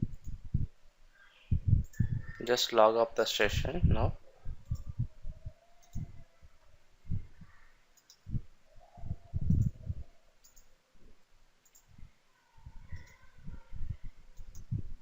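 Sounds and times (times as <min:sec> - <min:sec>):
soft low thumps: 0:00.0 - 0:00.8, 0:01.5 - 0:02.4, 0:03.6 - 0:06.2, 0:07.0 - 0:07.6, 0:08.2 - 0:10.1, 0:12.7 - 0:15.0
computer mouse clicks: 0:01.8 - 0:02.1, 0:05.8 - 0:06.1, 0:08.0 - 0:08.2, 0:09.5 - 0:09.8, 0:10.4 - 0:10.7, 0:11.6 - 0:11.9, 0:12.9 - 0:13.2, 0:14.4 - 0:14.7.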